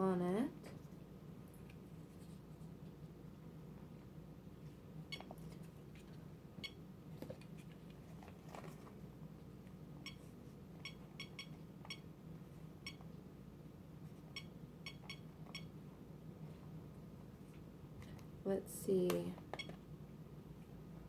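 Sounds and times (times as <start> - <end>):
low steady hum: 0.0 - 21.0
faint keypad beeps: 5.1 - 5.4, 6.6 - 6.8, 10.0 - 12.1, 12.8 - 13.1, 14.3 - 15.8, 19.6 - 19.8.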